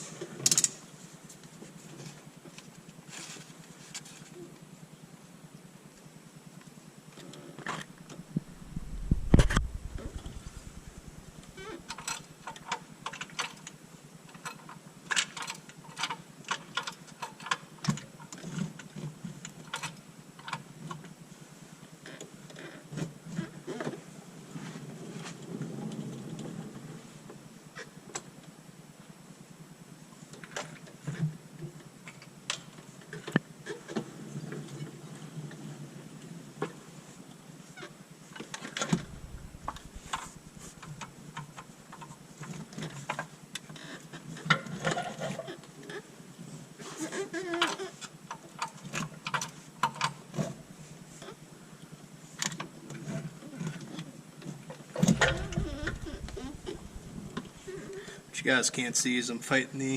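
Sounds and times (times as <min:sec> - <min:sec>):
heavy thump: 0:08.4 - 0:11.4.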